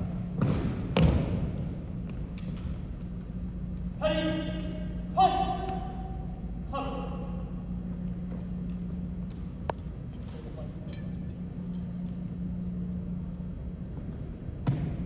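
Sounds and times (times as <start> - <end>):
room hum: 0.0 - 15.0
faint clinks: 9.8 - 13.5.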